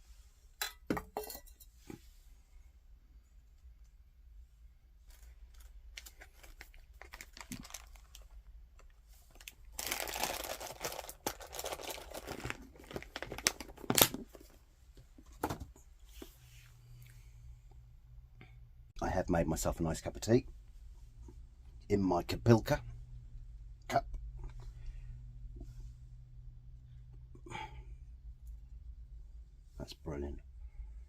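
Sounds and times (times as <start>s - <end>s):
packaging crinkling and rustling: 5.1s - 14.6s.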